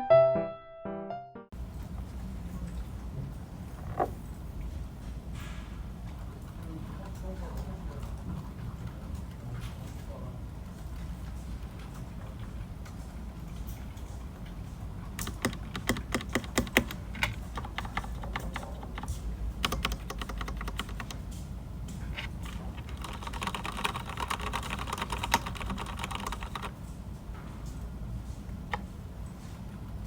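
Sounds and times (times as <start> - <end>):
mechanical keyboard typing: 15.2 - 21.3, 22.2 - 26.8.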